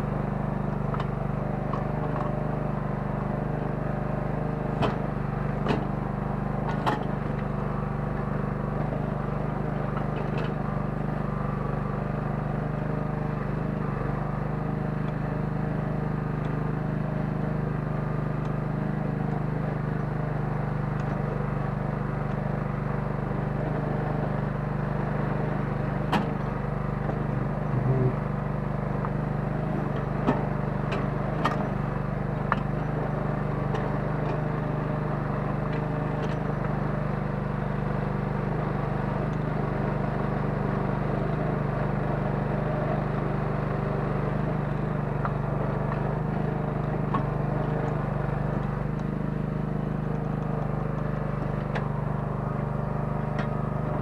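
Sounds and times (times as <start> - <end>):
small excavator engine running: 0.0 - 54.0
sharp knocks and clicks: 5.6 - 5.9.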